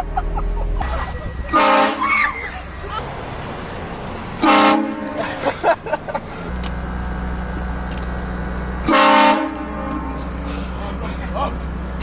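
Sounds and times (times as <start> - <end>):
train horn blasts: 1.5 - 2.2, 4.4 - 5.2, 8.8 - 10.4.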